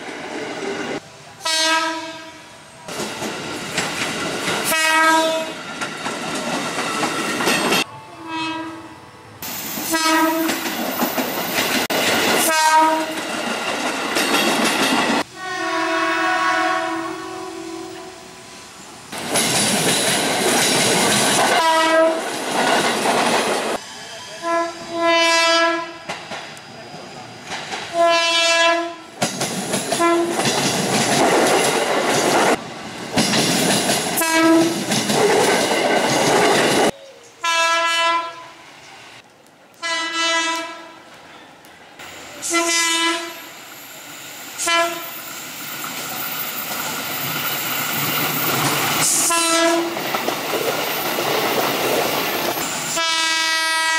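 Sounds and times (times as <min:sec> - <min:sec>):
trains rushing past: 0:00.0 - 0:53.9
train horn blasts: 0:01.4 - 0:02.6, 0:04.6 - 0:05.6, 0:08.1 - 0:09.0, 0:09.9 - 0:10.6, 0:12.4 - 0:13.2, 0:15.3 - 0:18.4, 0:21.6 - 0:22.2, 0:24.4 - 0:26.0, 0:27.9 - 0:29.1, 0:30.0 - 0:30.4, 0:34.2 - 0:34.8, 0:37.4 - 0:38.6, 0:39.8 - 0:41.0, 0:42.4 - 0:43.5, 0:44.6 - 0:45.2, 0:49.1 - 0:50.0, 0:52.9 - 0:53.9.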